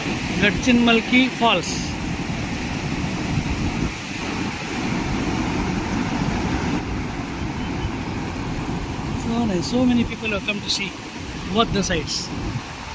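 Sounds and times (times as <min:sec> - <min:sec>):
waterfall roaring: 0:00.0 - 0:12.9
wind rumbling on microphone: 0:00.0 - 0:12.9.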